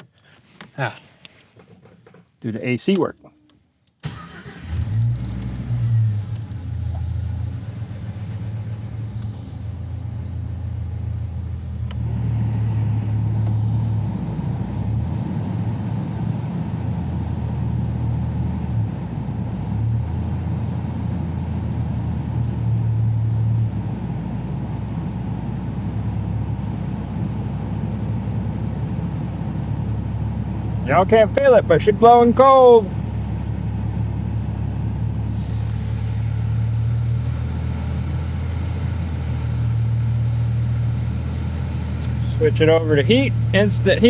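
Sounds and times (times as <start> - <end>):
car engine idling: 3.4 - 44.0
blower fan rushing: 4.0 - 44.0.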